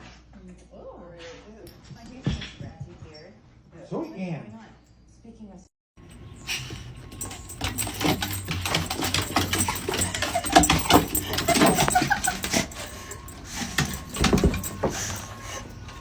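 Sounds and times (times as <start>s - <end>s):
clicking and scuffling: 6.6s - 16.0s
dog vocalising: 7.6s - 16.0s.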